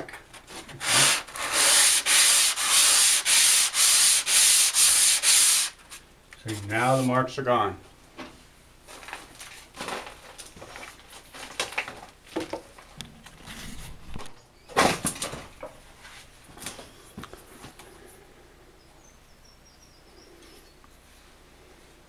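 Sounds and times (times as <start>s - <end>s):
handling rustles and knocks: 8.2s - 17.9s.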